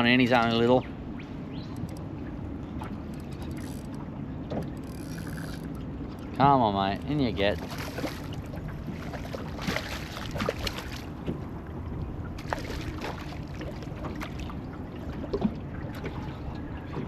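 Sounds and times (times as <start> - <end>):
water noise: 0.0 - 17.0
wind: 0.0 - 17.0
fish splashing: 1.8 - 6.4, 7.0 - 11.2.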